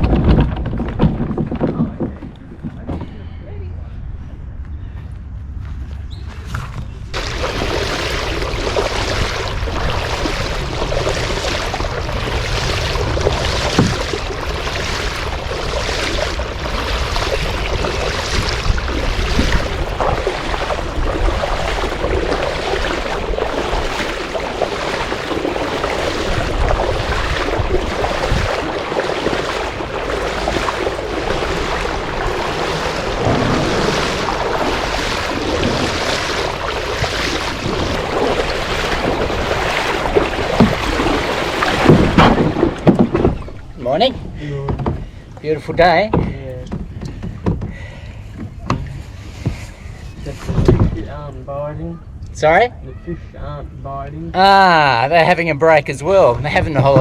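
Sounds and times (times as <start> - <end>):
wind blowing over microphone: 0.0 - 44.5
waves washing: 7.1 - 45.2.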